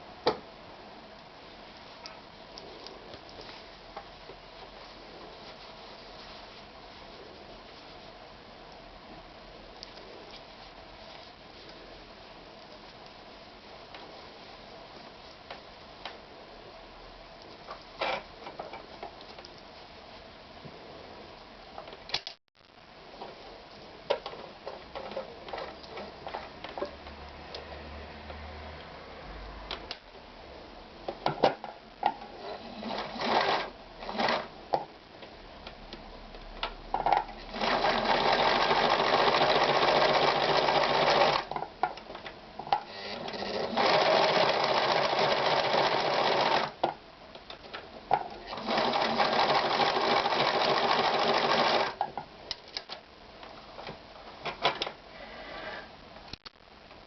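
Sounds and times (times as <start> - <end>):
sewing machine sewing: 32.4 - 34.5, 37.5 - 41.5, 42.8 - 46.8, 48.4 - 52.0.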